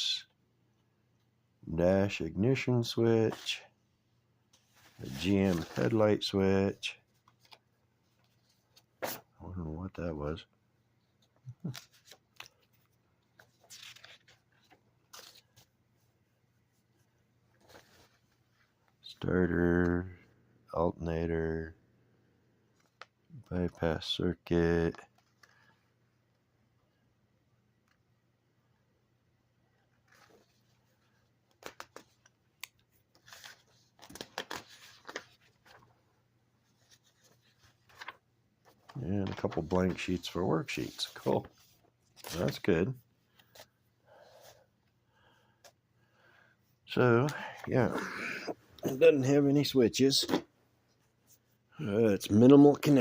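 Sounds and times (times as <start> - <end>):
paper sheets rustling: 4.6 - 9.2, 11.6 - 16.1, 32.9 - 35.9, 36.6 - 43.7.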